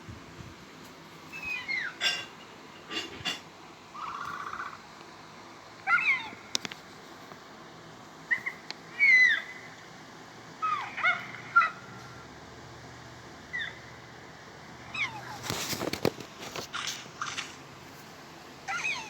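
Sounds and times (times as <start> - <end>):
high-pitched animal cries: 1.3 - 2.3, 4.0 - 4.8, 5.9 - 6.4, 8.3 - 9.7, 10.6 - 12.1, 14.9 - 15.4, 18.7 - 19.0.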